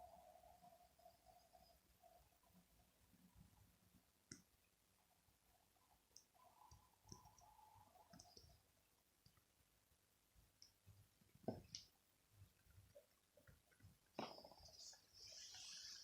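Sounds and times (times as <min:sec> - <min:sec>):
faint clicks: 0:06.1 - 0:08.6.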